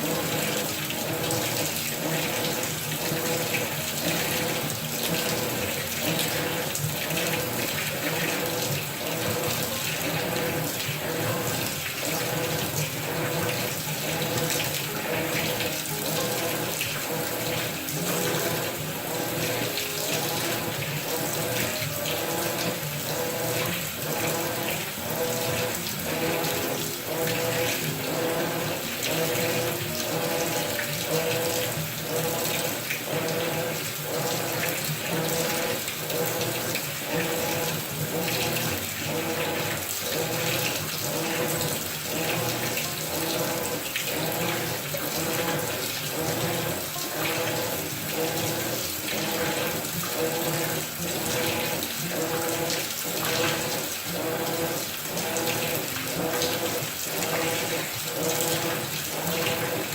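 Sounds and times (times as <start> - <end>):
water rushing in washing machine: 0.0 - 59.9.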